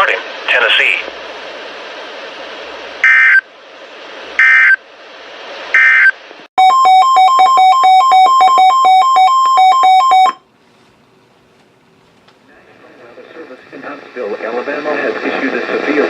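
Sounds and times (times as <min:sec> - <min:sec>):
radio static: 0:00.0 - 0:01.3, 0:12.5 - 0:16.0.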